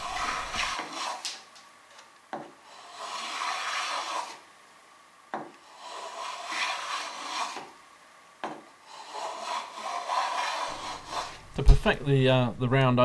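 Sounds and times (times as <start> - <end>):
plane rasping along wood: 0.0 - 1.2, 2.7 - 4.4, 5.6 - 7.7, 8.9 - 12.7.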